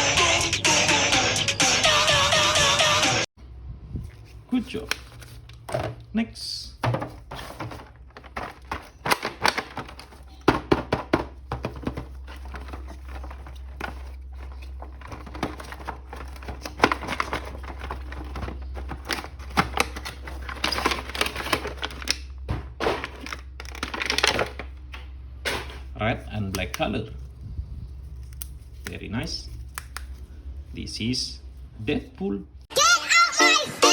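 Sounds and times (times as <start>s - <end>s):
plastic crinkling: 7.2s - 10.4s, 11.5s - 24.8s.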